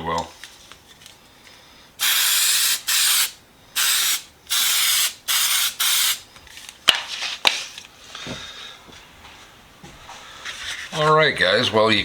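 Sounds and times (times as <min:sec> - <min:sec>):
aerosol can spraying hiss: 0:02.0 - 0:06.2.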